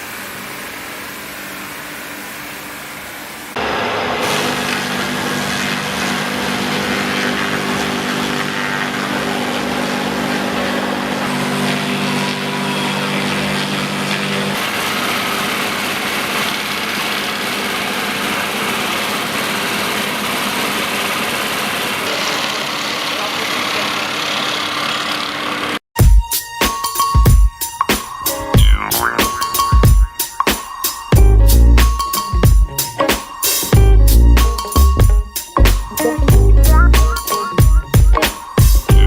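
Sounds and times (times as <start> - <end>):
machinery running loudly: 3.6 - 25.8, 33.6 - 39.0
low hum: 35.7 - 38.2.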